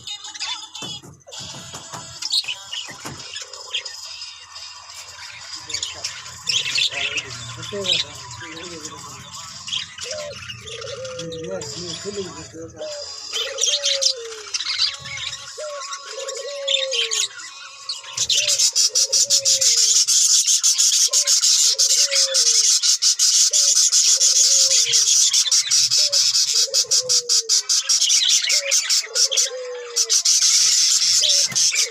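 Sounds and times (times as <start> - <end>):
parrots chattering: 0.0 - 31.9
dove cooing: 5.8 - 17.4, 18.1 - 20.2, 21.1 - 22.8, 23.4 - 31.9.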